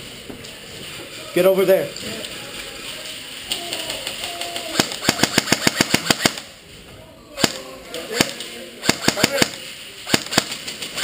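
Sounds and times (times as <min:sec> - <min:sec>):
airsoft gun shots: 0:04.7 - 0:06.5, 0:07.4 - 0:10.7.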